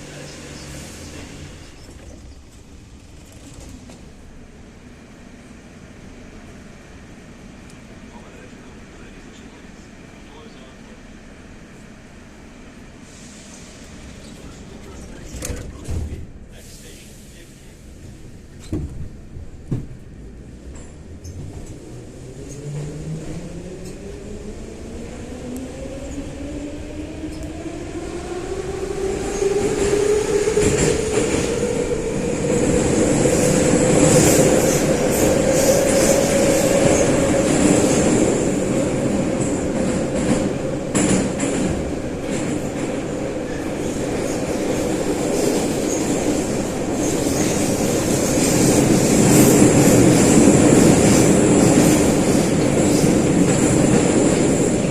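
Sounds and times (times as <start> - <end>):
wheel and track rumble: 0.0 - 4.5.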